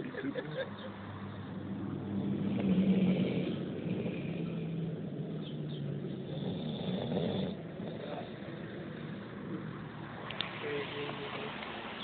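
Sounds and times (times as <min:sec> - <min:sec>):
man snoring: 0:02.2 - 0:04.8, 0:06.2 - 0:08.4.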